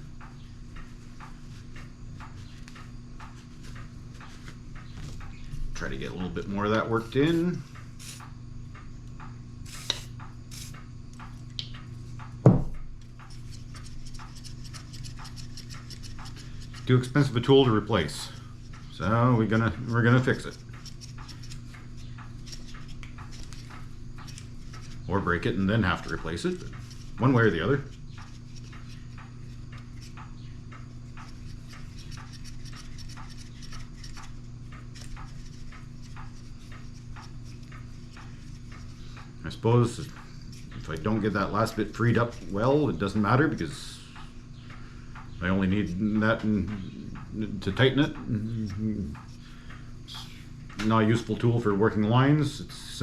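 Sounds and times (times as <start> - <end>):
loud knock: 12.5 - 12.8.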